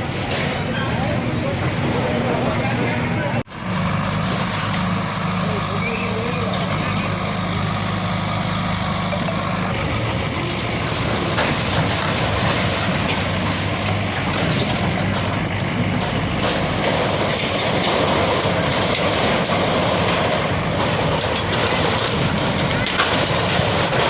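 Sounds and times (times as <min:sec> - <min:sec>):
clattering and scraping: 0:00.0 - 0:03.0, 0:06.5 - 0:24.0
bulldozer diesel engine running: 0:00.0 - 0:24.0.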